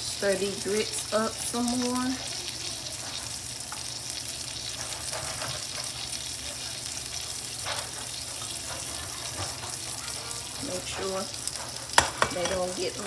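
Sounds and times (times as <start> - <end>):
food sizzling in a frying pan: 0.0 - 13.0
spoon scraping a pot: 4.6 - 6.4, 7.0 - 13.0.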